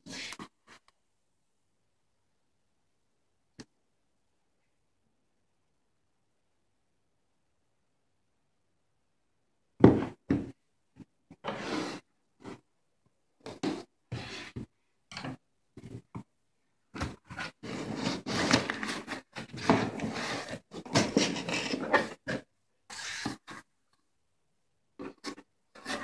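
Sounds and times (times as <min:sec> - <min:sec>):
box and packaging rustling: 0:17.0 - 0:22.4.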